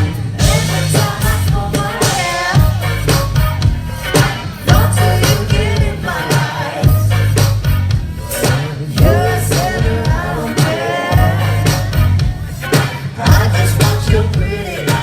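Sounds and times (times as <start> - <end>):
live band music: 0.0 - 15.0.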